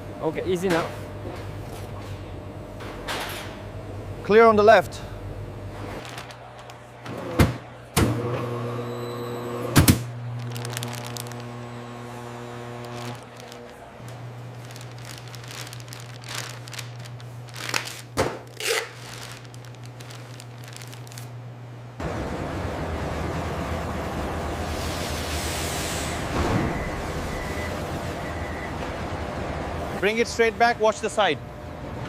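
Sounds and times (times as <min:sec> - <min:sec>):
steady low hum: 0:00.0 - 0:08.0.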